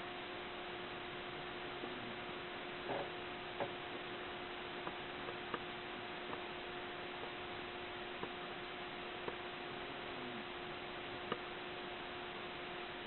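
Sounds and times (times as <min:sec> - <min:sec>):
steady hum and hiss: 0:00.0 - 0:13.0
cat snoring: 0:01.8 - 0:03.7, 0:09.9 - 0:10.6.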